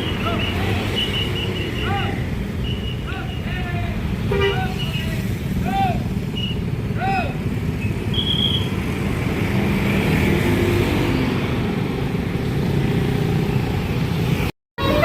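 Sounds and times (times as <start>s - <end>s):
road traffic rumble: 0.0s - 15.0s
short high tone: 14.8s - 15.0s.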